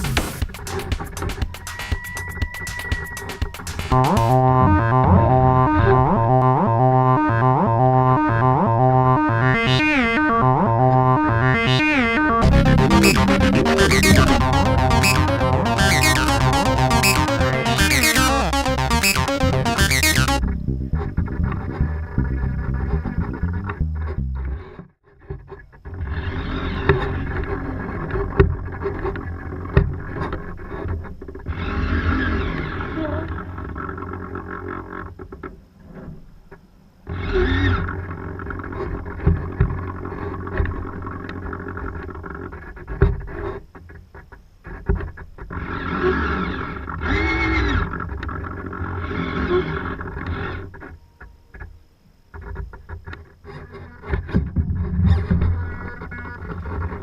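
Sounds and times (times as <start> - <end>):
synthesizer chords with pitch glides: 3.7 - 20.4.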